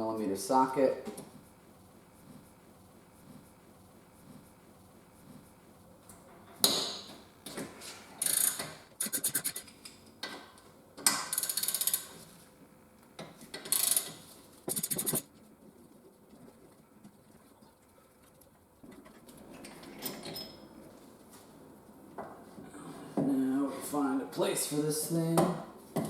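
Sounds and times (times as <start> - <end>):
ratchet wrench clicking: 8.2 - 9.7, 11.2 - 12.2, 13.6 - 15.2.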